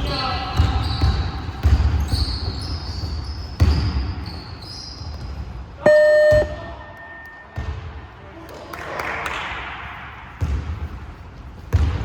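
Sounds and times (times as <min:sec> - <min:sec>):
sneaker squeaks: 0:00.0 - 0:07.6
basketball bouncing: 0:00.6 - 0:02.4, 0:10.4 - 0:10.9, 0:11.7 - 0:12.0
loud electronic buzzer: 0:05.9 - 0:06.8.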